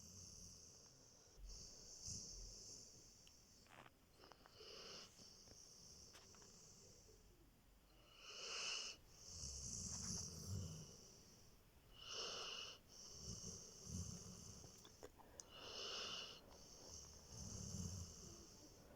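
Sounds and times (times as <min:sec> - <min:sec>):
dog snoring: 0:08.0 - 0:11.2, 0:11.9 - 0:18.9.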